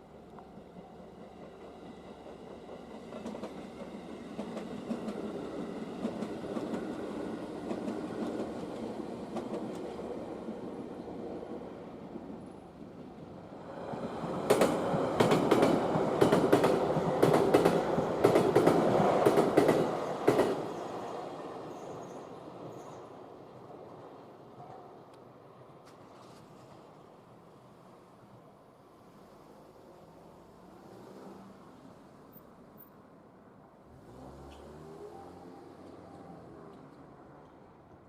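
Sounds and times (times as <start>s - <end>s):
train rumble: 0.0s - 21.9s.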